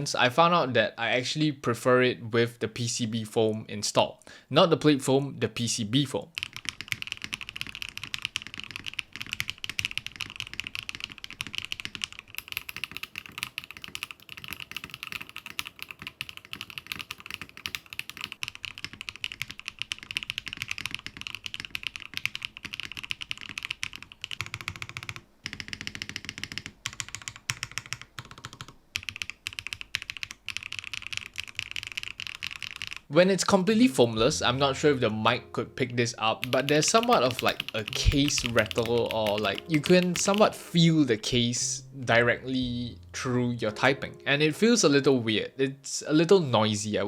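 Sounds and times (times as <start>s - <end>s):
mechanical keyboard typing: 6.3s - 33.1s, 36.4s - 41.3s.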